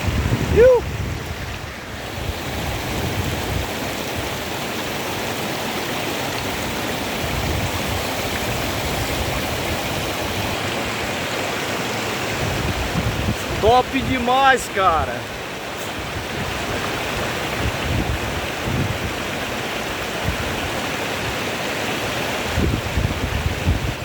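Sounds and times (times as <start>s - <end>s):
waterfall rushing: 0.0s - 24.0s.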